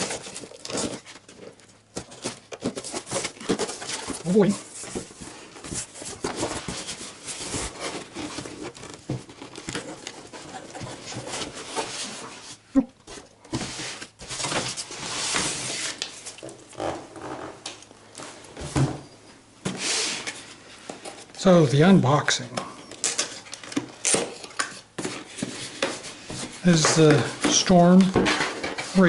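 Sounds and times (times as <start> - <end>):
packaging rustling and crinkling: 0.0 - 18.6, 22.8 - 29.0.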